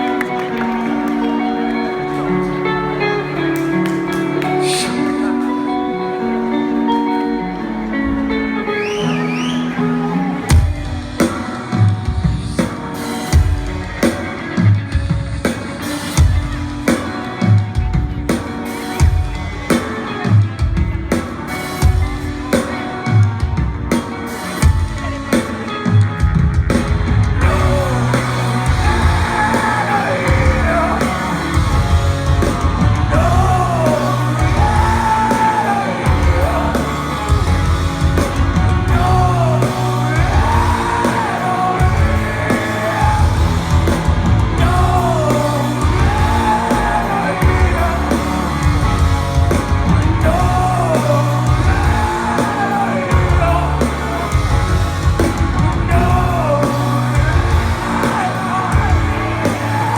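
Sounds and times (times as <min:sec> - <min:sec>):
live rock band: 0:00.0 - 0:59.9
person singing and shouting: 0:27.4 - 0:48.9, 0:49.5 - 0:59.9.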